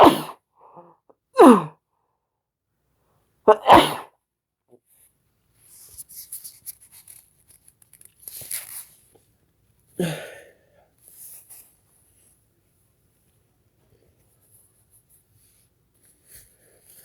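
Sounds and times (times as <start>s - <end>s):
person sniffing through the nose: 0.0s - 0.4s, 3.6s - 4.1s.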